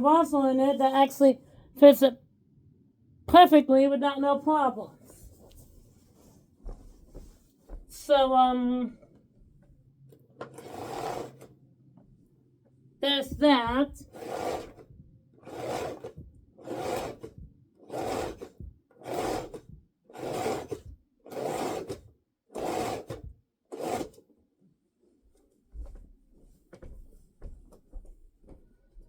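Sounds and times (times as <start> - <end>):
rasping strokes: 10.5 - 11.5, 14.0 - 24.2.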